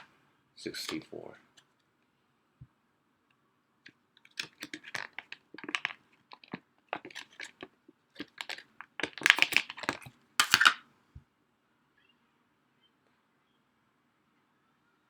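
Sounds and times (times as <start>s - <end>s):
plastic packaging crinkling: 4.3s - 10.8s.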